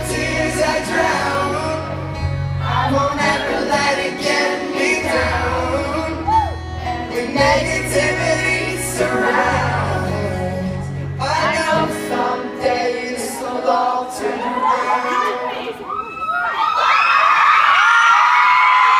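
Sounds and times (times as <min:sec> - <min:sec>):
low bass notes: 0:00.0 - 0:12.7
acoustic instruments playing: 0:00.0 - 0:15.9
voices singing: 0:00.0 - 0:15.9.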